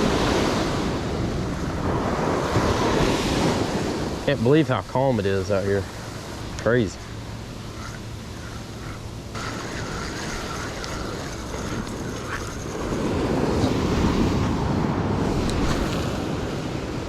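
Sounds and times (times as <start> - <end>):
surf washing on a beach: 0.0 - 17.0
faint wavering squeak: 7.7 - 13.2.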